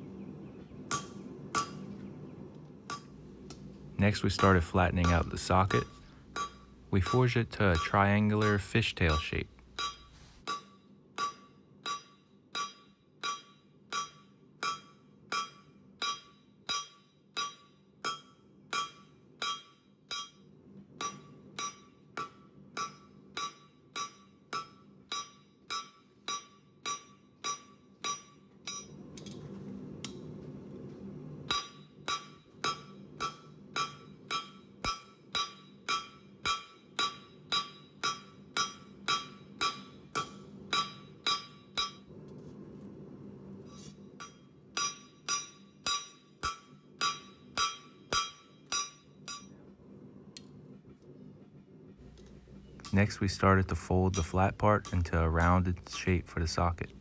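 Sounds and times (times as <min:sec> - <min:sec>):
low steady rushing noise: 0:00.0 - 0:10.4, 0:49.3 - 0:57.0
hammer striking metal on anvil: 0:00.9 - 0:02.0, 0:02.9 - 0:29.1, 0:31.5 - 0:42.1, 0:43.8 - 0:49.6, 0:53.8 - 0:56.9.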